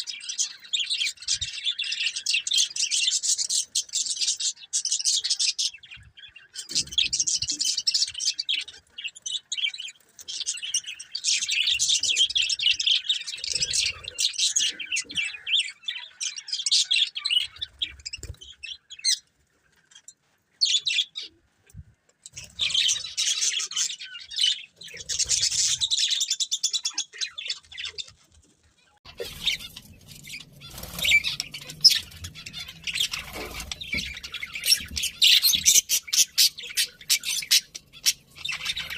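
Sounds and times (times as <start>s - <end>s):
budgerigars chirping: 29.1s - 38.9s.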